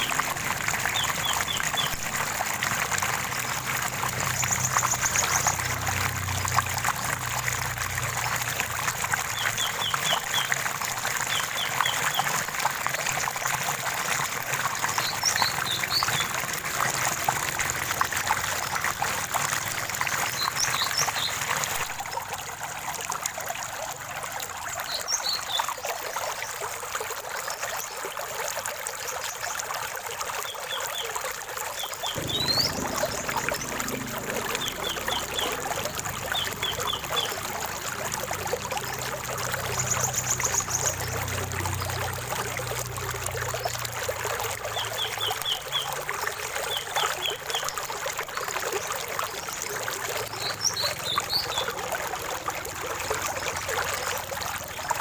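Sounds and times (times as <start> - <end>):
stream splashing over stones: 0.0 - 55.0
small birds chirping: 31.8 - 38.1.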